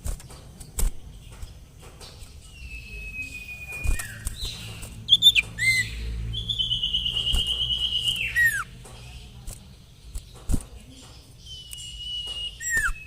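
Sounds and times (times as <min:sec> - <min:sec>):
bird calling: 0:01.2 - 0:09.3, 0:10.1 - 0:13.0
bird whistle with trill: 0:02.5 - 0:08.7, 0:11.5 - 0:13.0.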